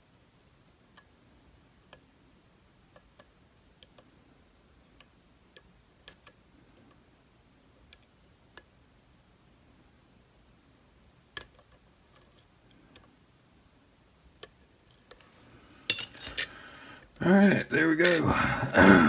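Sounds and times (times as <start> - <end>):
lock picks clicking: 15.9 - 16.5.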